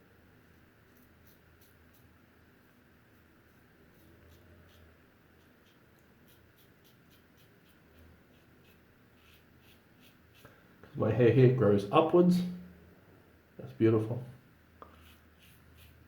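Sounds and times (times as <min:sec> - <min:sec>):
razor scraping stubble: 0:00.9 - 0:11.0, 0:14.8 - 0:16.0.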